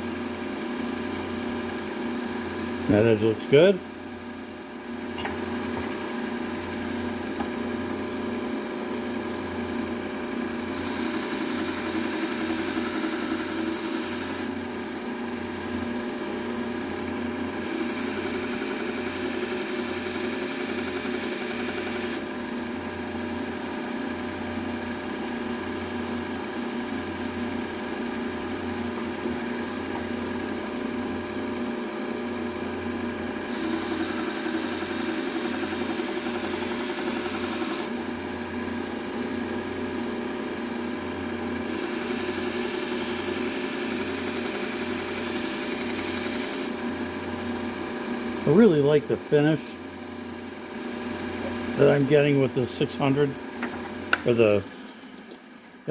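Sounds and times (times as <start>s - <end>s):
belt sander humming: 10.5s - 15.3s, 17.6s - 22.3s.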